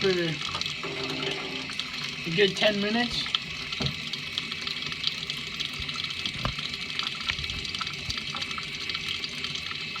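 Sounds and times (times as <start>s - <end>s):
faucet water running into sink: 0.0s - 10.0s.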